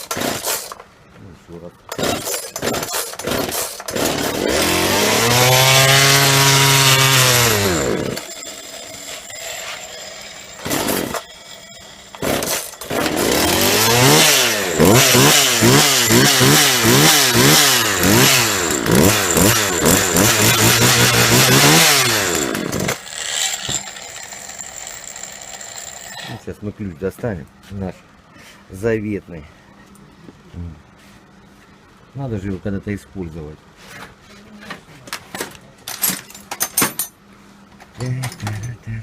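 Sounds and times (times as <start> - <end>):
chainsaw engine revving: 0.0 - 0.8, 1.9 - 26.4.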